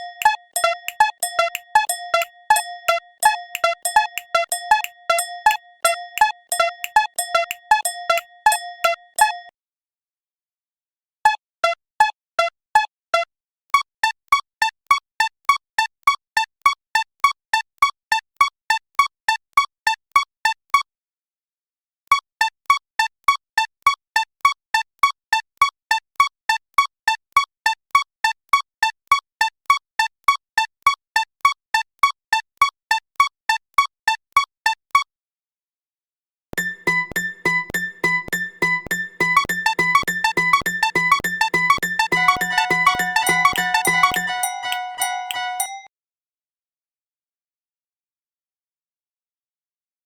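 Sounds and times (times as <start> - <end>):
railroad crossing bell dinging: 36.6 - 45.9.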